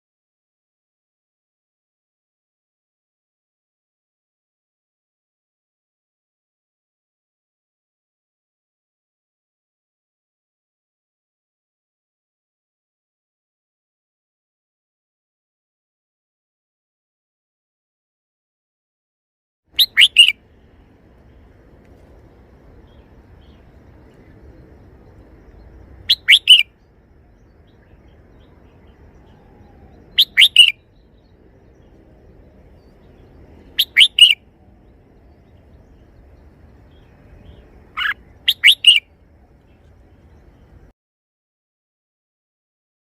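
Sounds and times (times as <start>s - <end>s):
bird singing short phrases: 19.8s - 20.4s, 22.8s - 32.0s, 32.6s - 40.8s.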